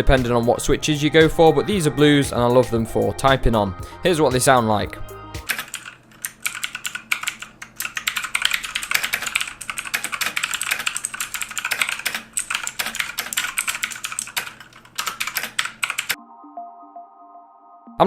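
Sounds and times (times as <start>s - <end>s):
clicky keyboard typing: 5.4s - 16.2s.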